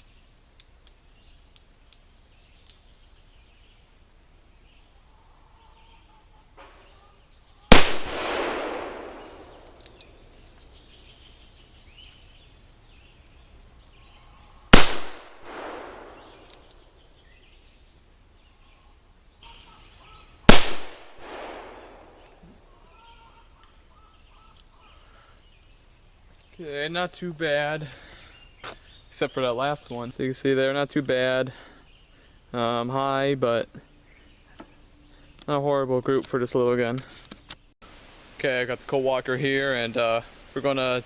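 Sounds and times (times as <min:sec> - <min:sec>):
faint click: 0:02.6 - 0:02.8, 0:09.6 - 0:10.7, 0:16.3 - 0:16.8
revolver shots with echo: 0:07.7 - 0:10.1, 0:14.8 - 0:16.7, 0:20.5 - 0:22.2.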